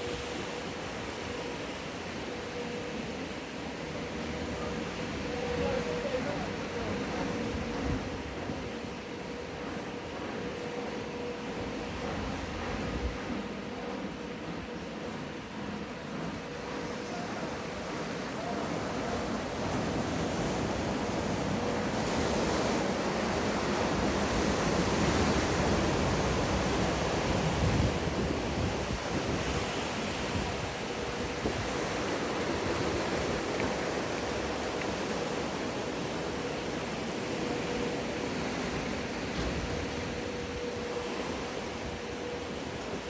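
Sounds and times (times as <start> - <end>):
waves breaking in pool: 12.2 - 43.0.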